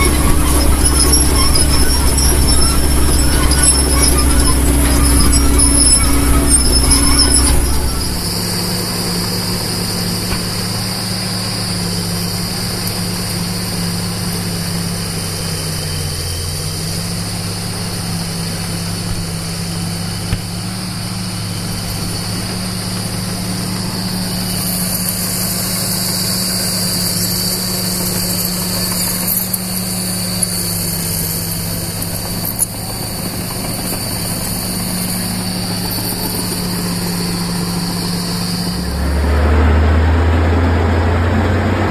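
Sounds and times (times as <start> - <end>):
high whine: 0.0 - 11.0, 36.8 - 41.9
excavator engine running: 0.0 - 41.9.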